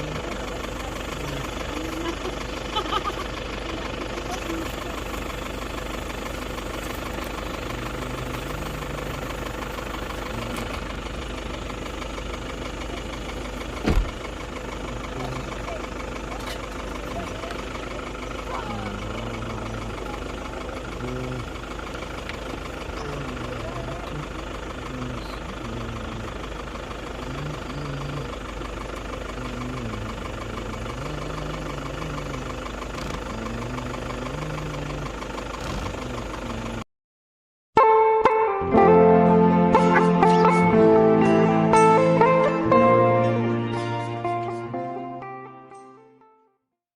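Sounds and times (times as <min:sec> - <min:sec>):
engine low rumble: 0:00.0 - 0:36.9, 0:38.7 - 0:46.2
short thump: 0:13.8 - 0:14.2.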